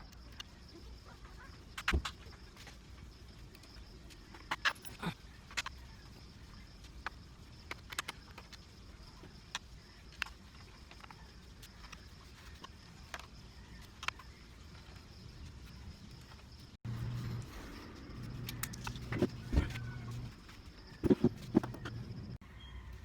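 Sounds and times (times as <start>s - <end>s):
low steady hum: 16.8s - 22.4s.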